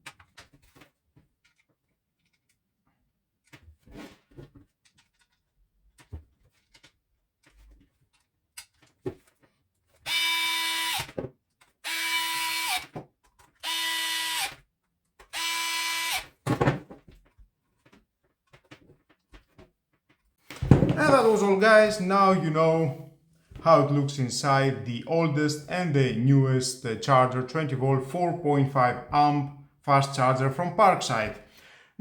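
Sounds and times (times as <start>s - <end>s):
cordless screwdriver whirring: 10.1s - 11.1s, 11.8s - 12.9s, 13.6s - 14.6s, 15.3s - 16.3s.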